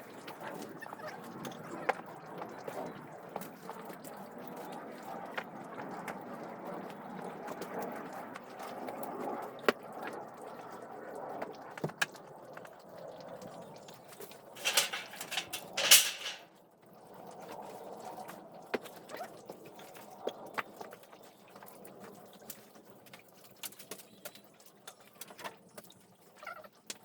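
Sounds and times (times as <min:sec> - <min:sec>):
loud scraping: 0:14.6 - 0:16.5.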